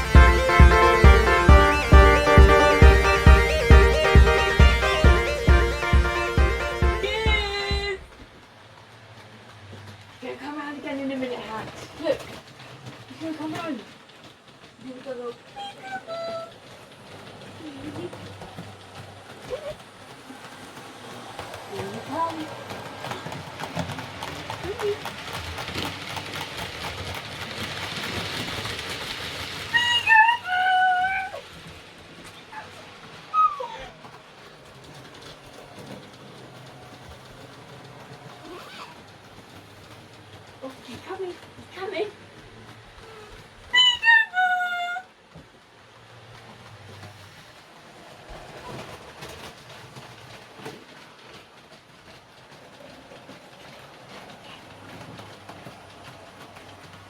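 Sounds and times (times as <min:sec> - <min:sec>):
two-note train horn: 0:00.0 - 0:07.8
train rushing noise: 0:00.0 - 0:57.0.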